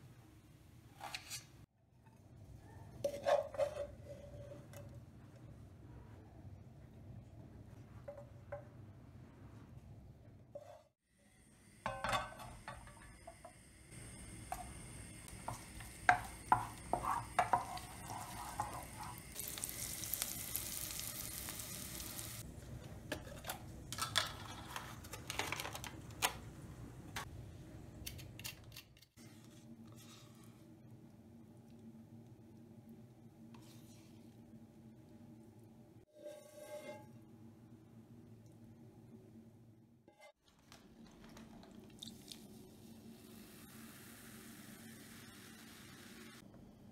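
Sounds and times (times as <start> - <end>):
utensil stirring and knocking pan: 11.8 - 13.6, 14.4 - 19.6
loud sizzling hiss: 13.8 - 22.4.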